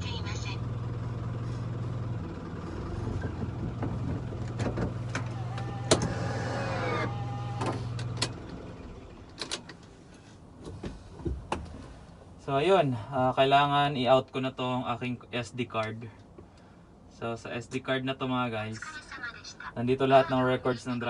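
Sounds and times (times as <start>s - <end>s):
truck engine idling: 0.0s - 10.6s
whirring motor whine: 5.1s - 9.4s.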